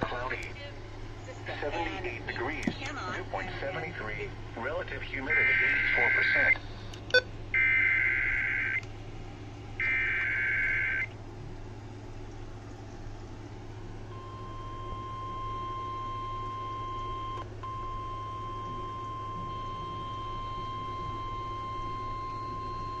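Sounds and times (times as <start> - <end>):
faint receiver hum: 0.0 - 23.0
steady warning alarm tone: 4.7 - 8.8, 9.8 - 11.1, 14.1 - 23.0.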